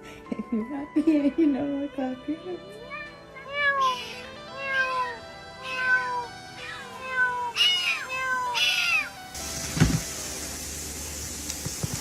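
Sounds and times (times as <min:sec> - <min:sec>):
cat meowing: 0:02.8 - 0:09.2.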